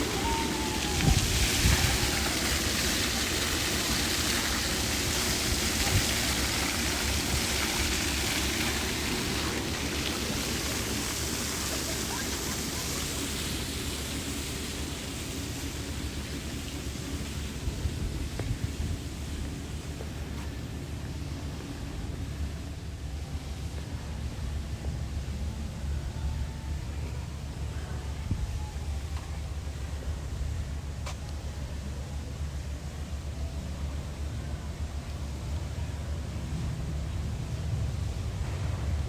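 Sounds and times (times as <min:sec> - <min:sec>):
steady rushing noise: 0:00.0 - 0:25.8
faint voices: 0:00.0 - 0:38.9.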